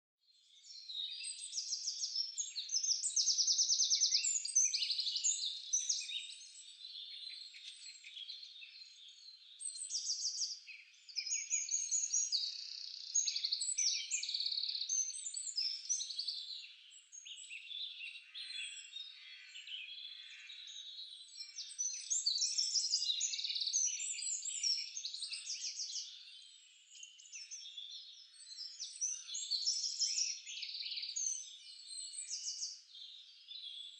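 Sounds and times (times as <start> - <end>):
small birds chirping and trilling: 0.2 - 33.9.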